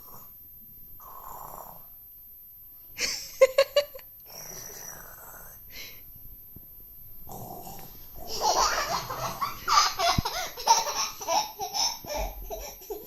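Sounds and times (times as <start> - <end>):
young child giggling: 3.0 - 4.0, 8.2 - 13.0.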